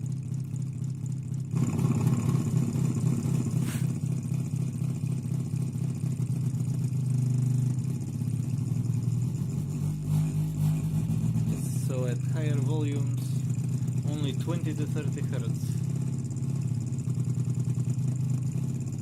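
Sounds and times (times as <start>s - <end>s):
subwoofer throbbing and rattling: 0.0s - 19.0s.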